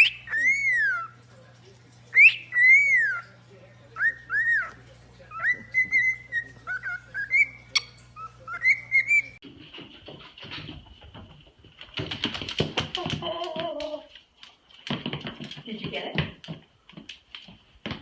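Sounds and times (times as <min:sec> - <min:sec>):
scuffling and clattering: 0:09.4 - 0:18.0.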